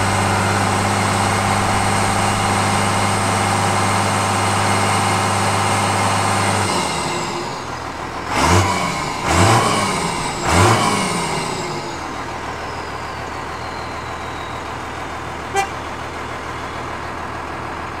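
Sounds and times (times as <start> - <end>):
diesel engine revving: 0.0 - 18.0
turbo whistle: 10.3 - 17.1.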